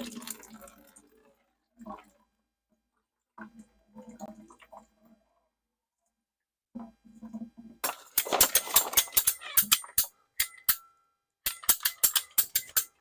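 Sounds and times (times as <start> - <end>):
hard objects clicking and clanking: 7.8 - 10.9, 11.5 - 13.0.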